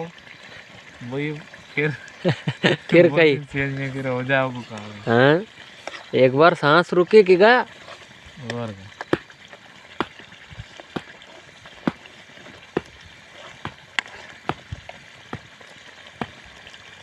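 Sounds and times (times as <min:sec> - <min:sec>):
faint steady hiss: 0:00.0 - 0:17.0
sharp popping of cooking chicken: 0:09.0 - 0:17.0.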